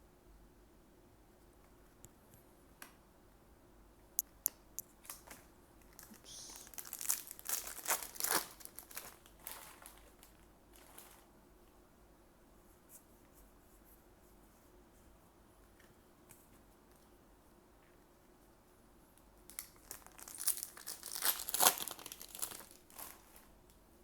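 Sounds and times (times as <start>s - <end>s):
sharp clicks: 4.2s - 4.9s
foil wrapper tearing and crinkling: 6.0s - 11.2s, 19.5s - 23.5s.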